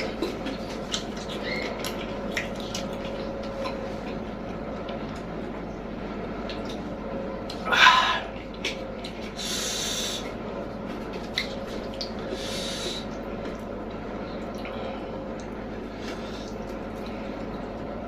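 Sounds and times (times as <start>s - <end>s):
person chewing with lip smacks: 0.0s - 4.2s.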